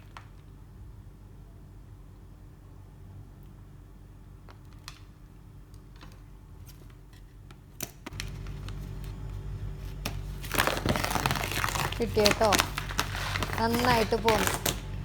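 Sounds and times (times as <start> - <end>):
low steady hum: 8.1 - 15.0.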